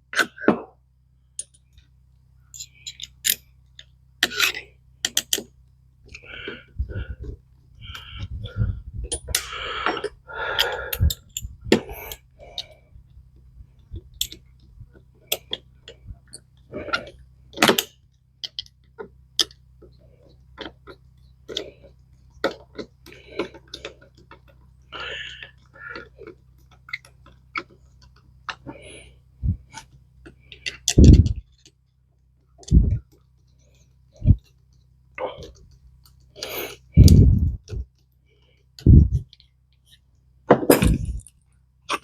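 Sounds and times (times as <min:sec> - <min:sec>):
steady low hum: 0:00.0 - 0:42.0
metal parts clicking and tapping: 0:01.4 - 0:01.9, 0:02.5 - 0:05.5, 0:13.9 - 0:14.7, 0:15.3 - 0:19.6.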